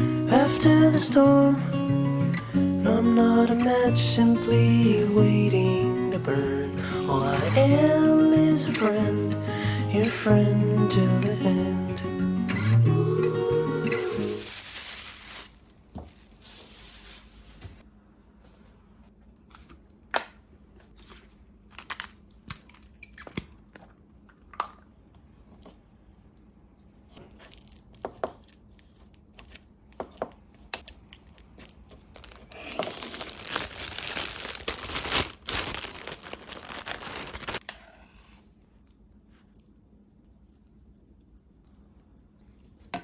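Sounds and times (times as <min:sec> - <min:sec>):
packaging crinkling and tearing: 0:14.2 - 0:17.8, 0:20.6 - 0:23.9, 0:30.6 - 0:37.6.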